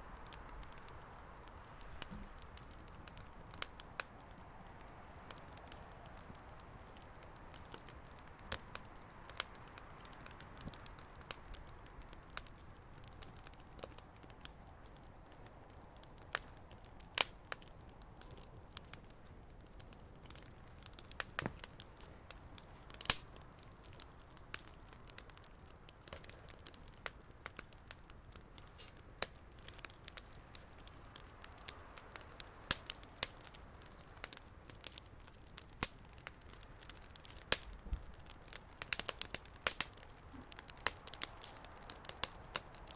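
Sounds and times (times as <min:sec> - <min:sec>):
wood fire crackling: 0:00.0 - 0:42.9.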